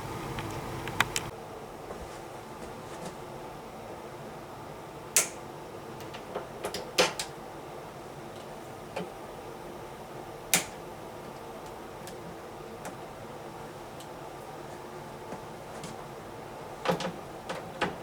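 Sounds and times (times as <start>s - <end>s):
faint steady hum: 0.0s - 18.0s
sharp clicks and knocks: 0.4s - 1.3s.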